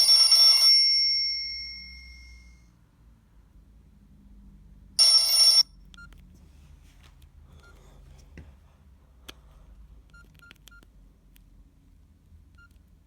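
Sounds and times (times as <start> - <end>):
phone ringtone: 0.0 - 2.6, 5.0 - 5.8
keypad beeps: 10.1 - 10.9, 12.5 - 12.8.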